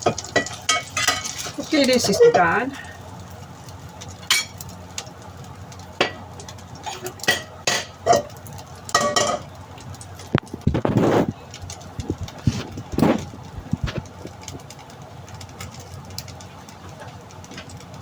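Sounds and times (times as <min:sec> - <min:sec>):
metal utensils clanking on pans: 0:00.0 - 0:03.1, 0:04.0 - 0:05.1, 0:05.8 - 0:13.3.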